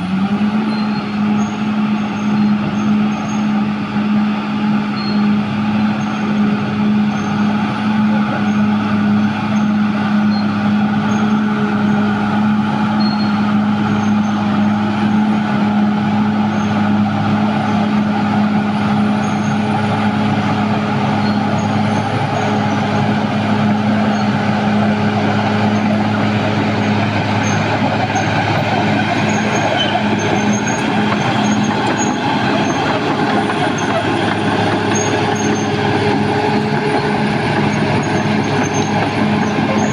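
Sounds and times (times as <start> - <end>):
bulldozer diesel engine drone: 0.0 - 39.9.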